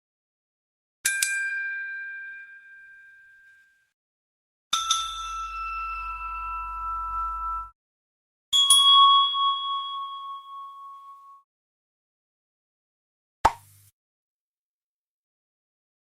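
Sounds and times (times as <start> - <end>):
metallic bell dings: 1.1 - 3.8, 4.7 - 7.7, 8.6 - 11.4.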